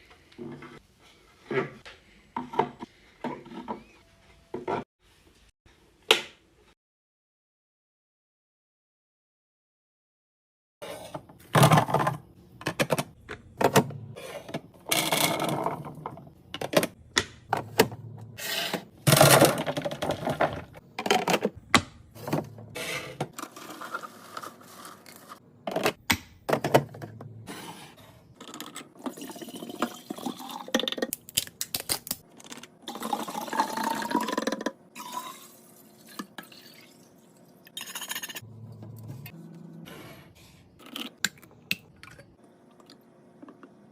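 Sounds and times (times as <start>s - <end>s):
containers clattering: 18.7s - 27.3s
liquid pouring into container: 35.0s - 38.1s.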